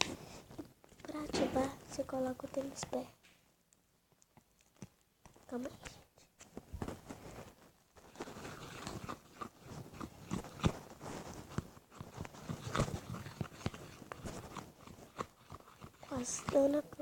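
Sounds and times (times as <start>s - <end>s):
wet squelches and clicks: 3.7s - 6.5s, 8.0s - 17.0s
spoon stirring slime: 8.0s - 17.0s.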